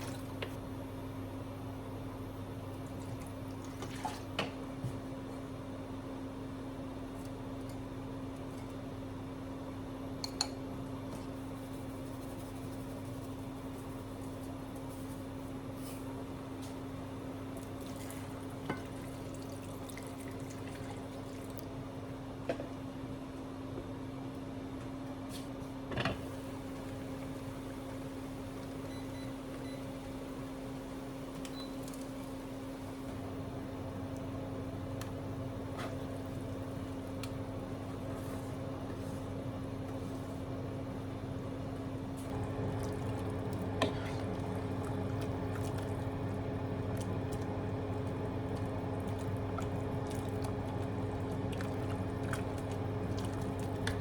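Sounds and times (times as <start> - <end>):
kitchen appliance humming: 25.9 - 54.0.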